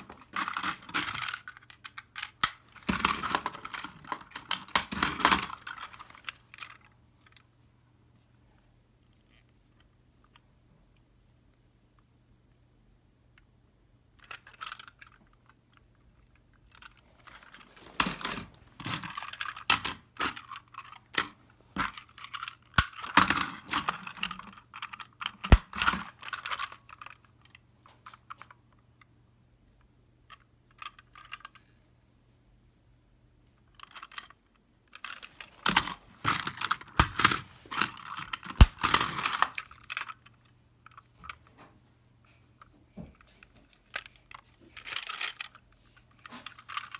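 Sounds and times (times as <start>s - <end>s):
plastic packaging crinkling: 17.2s - 19.4s
sharp plastic clicks: 25.3s - 26.6s, 35.7s - 39.6s.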